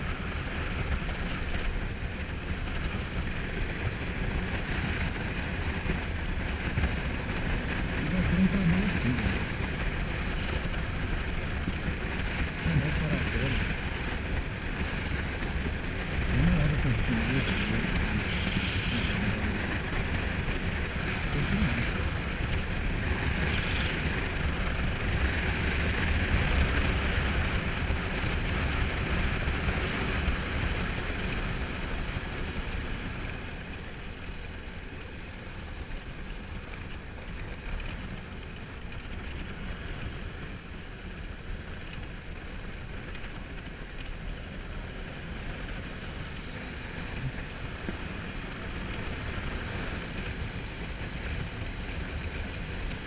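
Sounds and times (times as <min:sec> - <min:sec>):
wind rushing over microphone: 0:00.0 - 0:34.9
motorcycle engine running: 0:00.0 - 0:53.0.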